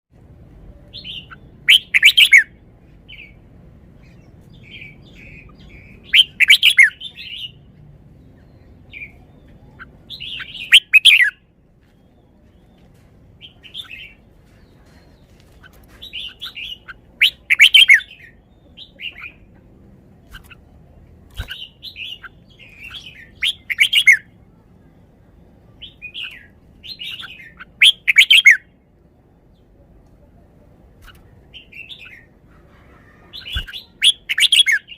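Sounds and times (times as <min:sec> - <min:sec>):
bird singing warbled phrases: 0:00.7 - 0:34.9
soft bird chirps: 0:04.0 - 0:29.9.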